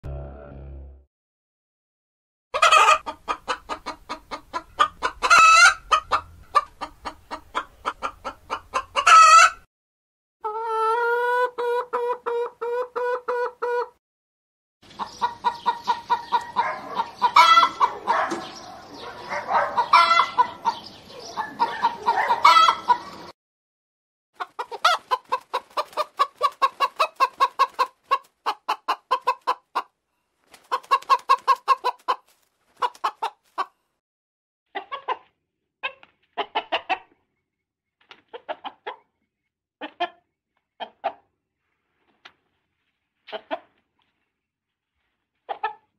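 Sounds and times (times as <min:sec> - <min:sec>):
chicken squawks: 0:02.6 - 0:09.6, 0:10.4 - 0:13.9, 0:15.0 - 0:23.3, 0:24.4 - 0:29.9, 0:34.7 - 0:37.1
chickens clucking: 0:02.6 - 0:09.7, 0:10.4 - 0:14.0, 0:14.8 - 0:23.3, 0:24.4 - 0:29.9, 0:30.5 - 0:33.7, 0:34.7 - 0:37.3, 0:38.1 - 0:39.1, 0:39.8 - 0:41.3, 0:43.3 - 0:43.8, 0:45.4 - 0:45.9.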